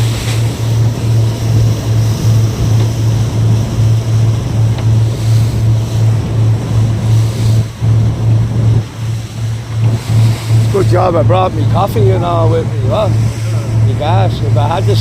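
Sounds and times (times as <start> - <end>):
boat engine pulsing hum: 0.0 - 15.0
water rushing along hull: 0.0 - 15.0
wind on microphone: 0.0 - 15.0.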